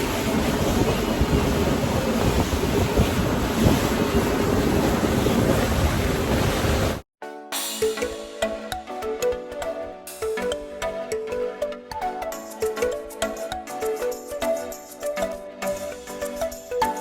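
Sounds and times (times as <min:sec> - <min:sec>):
water rushing past motorboat: 0:00.0 - 0:07.0
wind buffeting microphone: 0:00.0 - 0:07.0.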